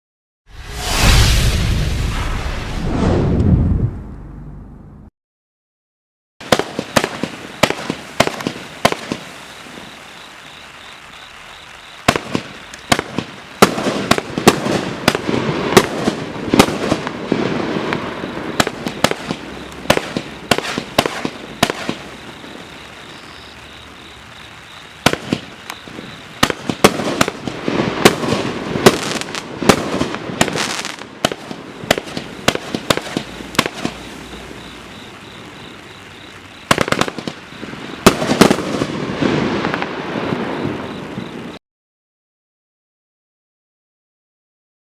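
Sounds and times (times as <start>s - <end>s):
firework bangs and bursts: 6.4s - 41.6s
firework crackling: 6.4s - 41.6s.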